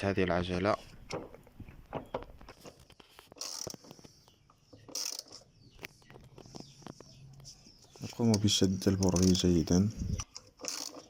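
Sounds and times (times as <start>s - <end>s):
tool rasps: 3.3s - 4.2s, 8.1s - 11.0s.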